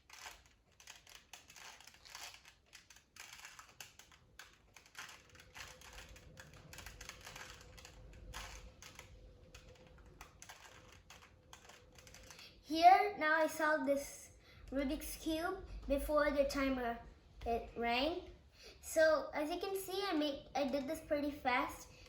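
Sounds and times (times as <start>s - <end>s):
puzzle cube plastic clicks: 0.0s - 12.4s.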